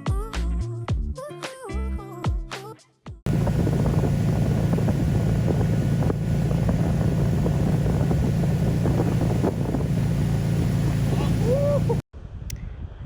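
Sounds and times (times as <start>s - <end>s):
engine droning: 3.3s - 12.0s
wind noise on microphone: 3.3s - 13.0s.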